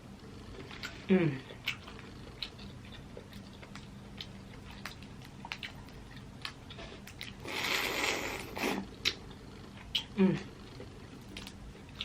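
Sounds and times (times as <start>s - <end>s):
soft mouth sounds: 6.9s - 10.9s.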